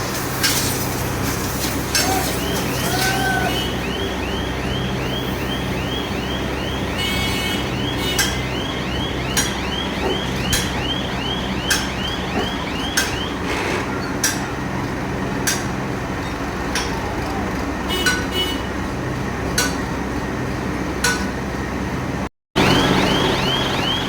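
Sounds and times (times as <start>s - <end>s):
steady industrial drone: 0.0s - 24.0s
warbling electronic warning tone: 2.0s - 13.5s, 22.6s - 24.0s
metal hammer blows: 8.0s - 8.6s.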